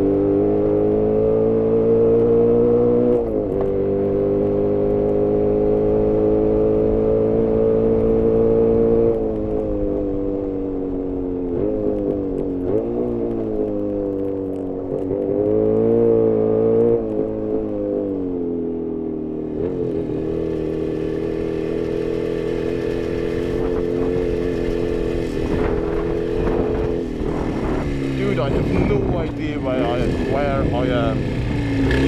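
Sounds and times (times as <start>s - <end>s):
two-stroke motorcycle engine revving: 19.5s - 32.0s.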